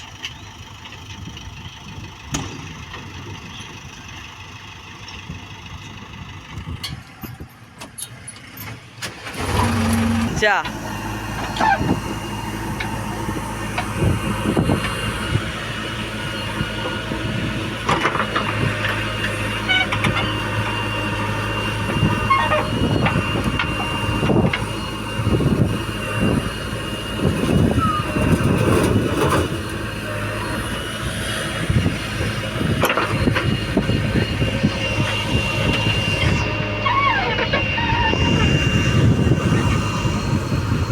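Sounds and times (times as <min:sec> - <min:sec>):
heavy machinery diesel engines: 0:00.0 - 0:40.9
thin high whine: 0:33.8 - 0:40.9.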